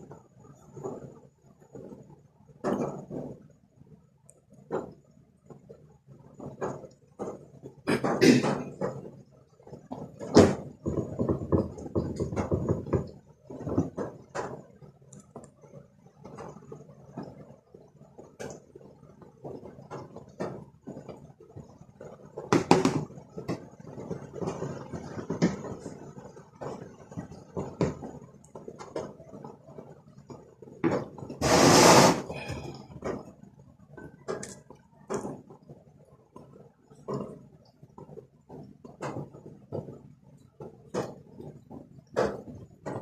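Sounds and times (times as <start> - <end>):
loud rushing noise: 31.4 - 32.3.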